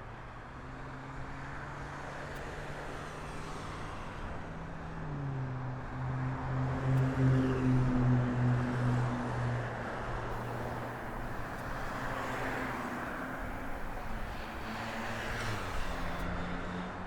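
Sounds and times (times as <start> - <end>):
low engine hum: 10.3 - 16.2
passing vehicles rushing: 10.3 - 16.3.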